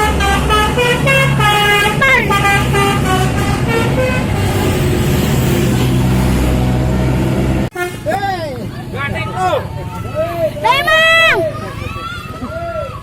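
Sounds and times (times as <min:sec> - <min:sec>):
musical bus horn tune: 0:00.0 - 0:08.1
bus engine rumbling: 0:00.0 - 0:13.0.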